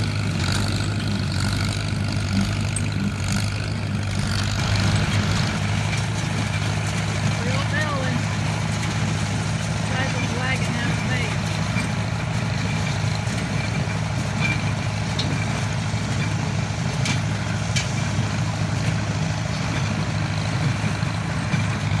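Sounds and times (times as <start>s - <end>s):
tractor engine running: 0.0s - 22.0s.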